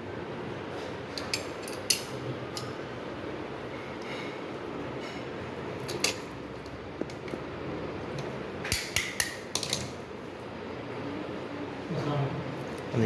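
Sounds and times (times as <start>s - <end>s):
low background hum: 0.0s - 13.0s
metallic clicks of lock parts: 1.2s - 2.7s, 5.8s - 6.4s, 8.2s - 9.9s.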